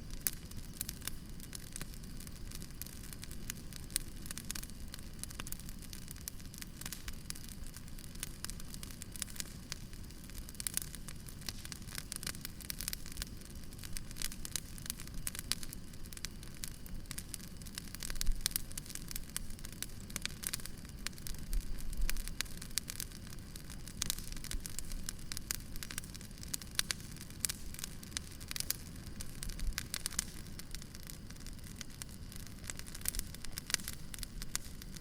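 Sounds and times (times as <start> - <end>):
wood fire crackling: 0.0 - 35.0.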